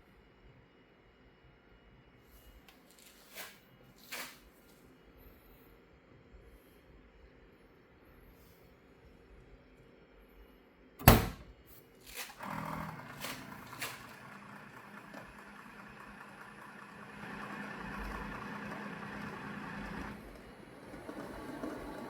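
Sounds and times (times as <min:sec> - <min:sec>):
motor humming: 0:12.4 - 0:22.0.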